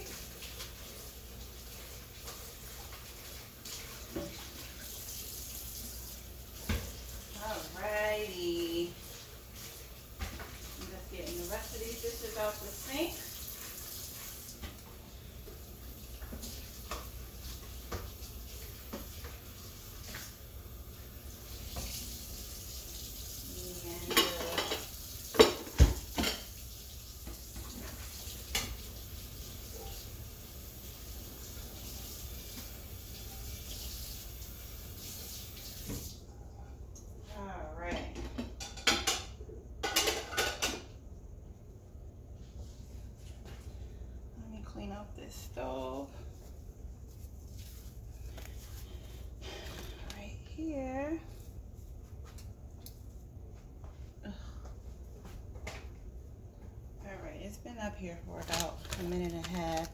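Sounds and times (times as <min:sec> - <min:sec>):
dishes and cutlery clinking: 0:24.0 - 0:26.6, 0:38.1 - 0:40.9
pots clanking: 0:24.0 - 0:26.6, 0:37.9 - 0:41.0.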